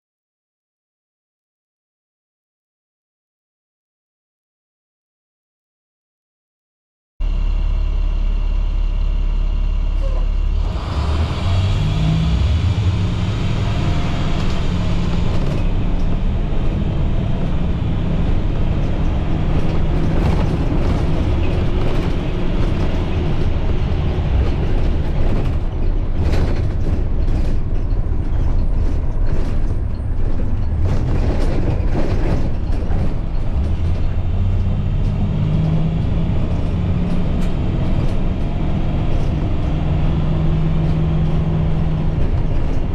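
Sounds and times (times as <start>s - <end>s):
diesel bus engine running: 7.2s - 42.9s
bus body rattling and creaking: 9.9s - 42.9s.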